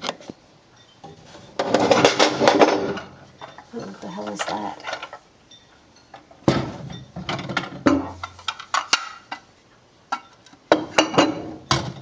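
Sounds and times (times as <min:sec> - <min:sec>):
ceramic plates knocking and clinking: 0:06.4 - 0:09.5, 0:10.2 - 0:12.0.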